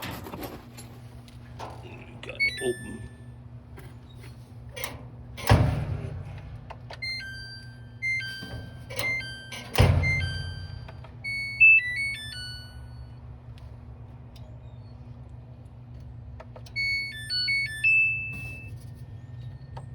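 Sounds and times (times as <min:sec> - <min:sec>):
dryer low hum: 0:00.0 - 0:19.9
electronic beeps tune: 0:02.3 - 0:03.3, 0:07.1 - 0:13.2.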